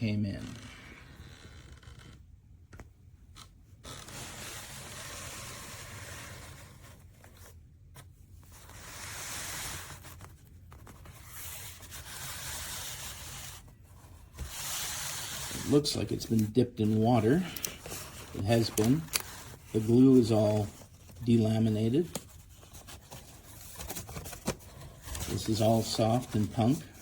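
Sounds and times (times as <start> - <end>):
cardboard box rubbing and scraping: 11.0 - 15.9.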